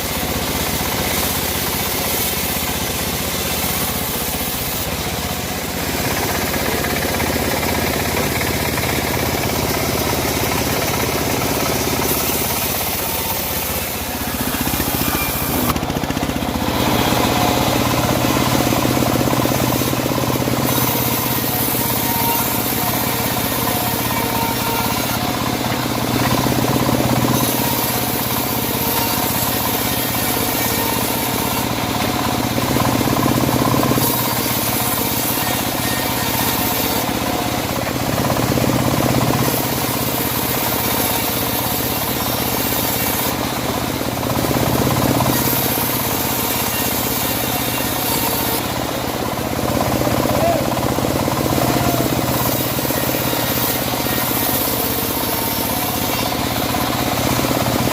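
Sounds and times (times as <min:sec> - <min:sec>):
bandsaw sawing through log: 0:00.0 - 0:57.9.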